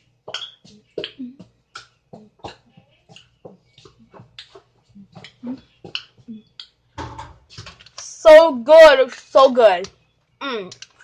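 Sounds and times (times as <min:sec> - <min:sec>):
smacking and chewing: 0:00.3 - 0:06.8.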